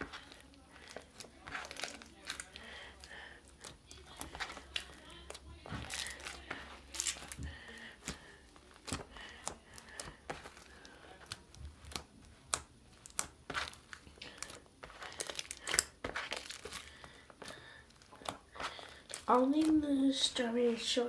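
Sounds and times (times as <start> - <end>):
slime being kneaded by hand: 0.0 - 21.0
sticky clicks and snaps: 3.6 - 19.8.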